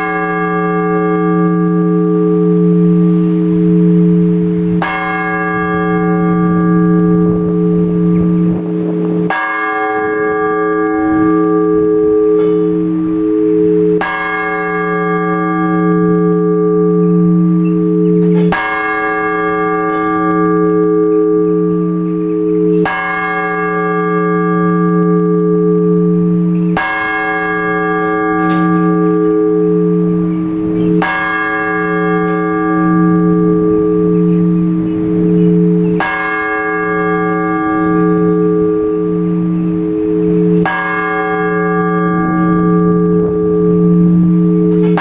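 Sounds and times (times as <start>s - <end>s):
large church bell strokes: 0.0s - 45.0s
low pulsing hum: 14.8s - 45.0s.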